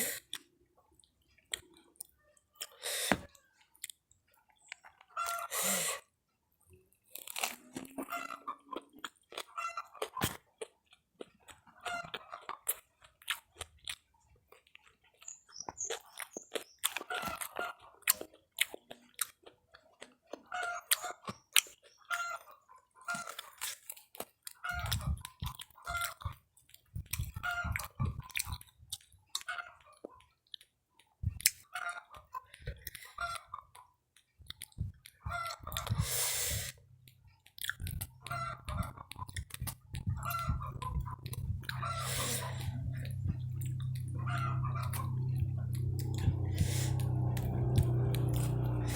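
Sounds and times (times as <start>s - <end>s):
chewing and crunching snacks: 0.0s - 48.9s.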